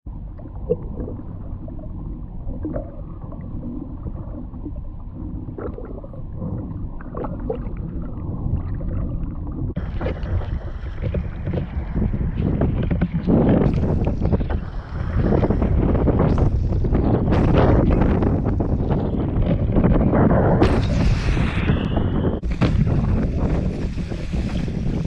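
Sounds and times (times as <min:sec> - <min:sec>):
water splashing and sloshing: 0:00.1 - 0:25.0
wind buffeting microphone: 0:08.0 - 0:25.0.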